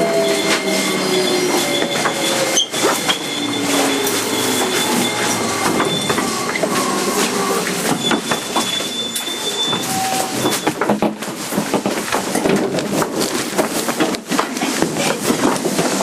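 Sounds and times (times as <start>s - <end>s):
faint traction motor tone: 0.0s - 10.6s
high wheel squeal: 0.0s - 11.6s
train wheels clattering over rail joints: 0.0s - 16.0s.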